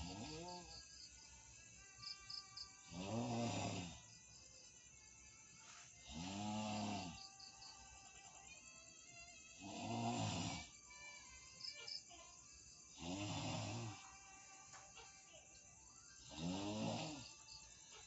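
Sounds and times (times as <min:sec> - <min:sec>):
man snoring: 0:00.0 - 0:00.8, 0:02.8 - 0:04.2, 0:06.0 - 0:07.4, 0:09.6 - 0:10.8, 0:12.9 - 0:14.2, 0:16.2 - 0:17.5.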